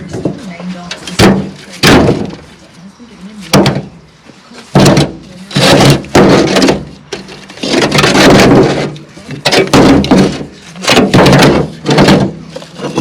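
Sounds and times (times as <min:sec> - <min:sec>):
bricks crashing and clattering: 0:04.8 - 0:13.0.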